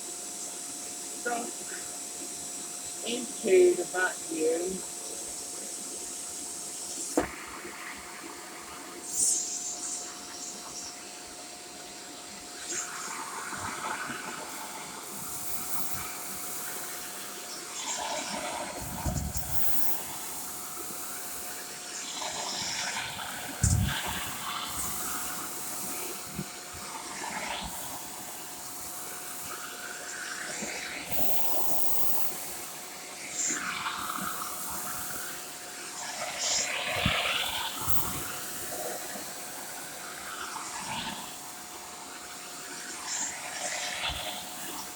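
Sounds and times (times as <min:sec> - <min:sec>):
vacuum cleaner running: 0:00.0 - 0:44.9
vacuum cleaner bumps: 0:07.1 - 0:07.4.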